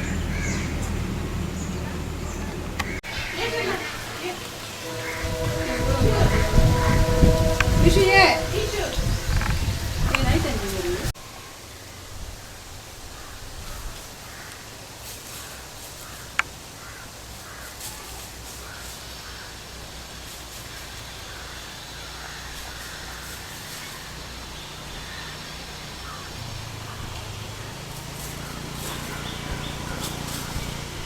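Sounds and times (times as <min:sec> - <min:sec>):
crows cawing: 0:00.1 - 0:00.9, 0:16.0 - 0:17.9.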